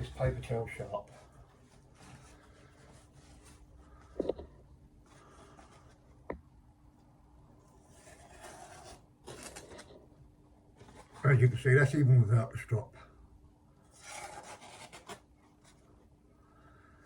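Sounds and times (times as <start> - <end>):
knife slicing paper towel: 7.8 - 9.9, 13.9 - 15.3.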